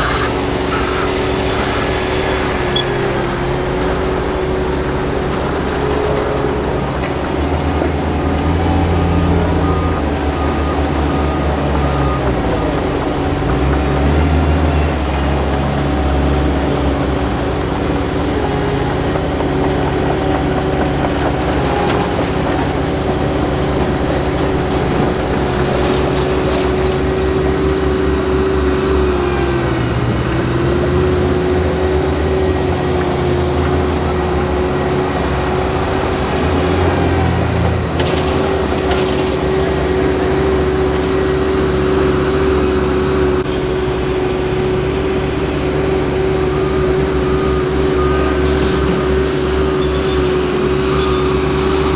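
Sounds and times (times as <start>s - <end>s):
constant droning tone: 0.0s - 11.7s
heavy diesel machinery rumbling: 0.0s - 51.9s.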